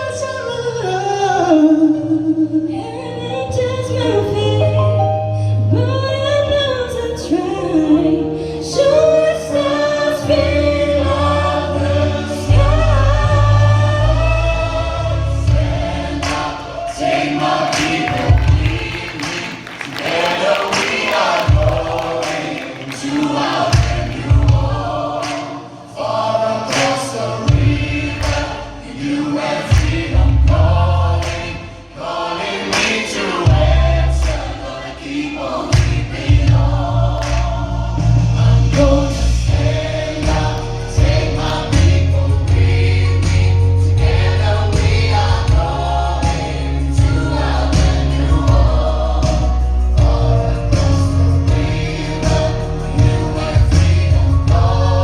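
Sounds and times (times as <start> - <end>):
choir singing gospel song: 8.6 - 55.0.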